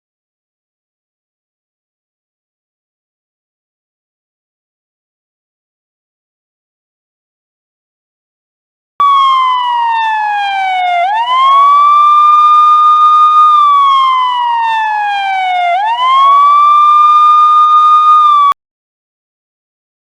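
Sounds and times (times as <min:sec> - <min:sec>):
police siren wailing: 0:09.0 - 0:18.6.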